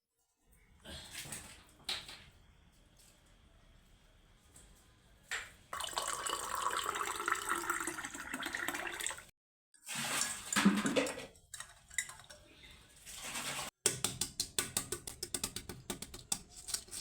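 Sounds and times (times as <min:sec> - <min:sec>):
water running from a tap: 0:05.8 - 0:09.3.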